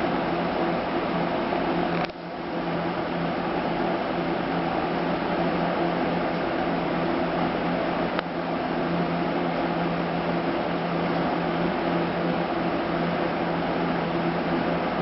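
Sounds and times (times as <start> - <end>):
machine hum with hiss: 0.0 - 15.0
sharp click: 1.9 - 2.2.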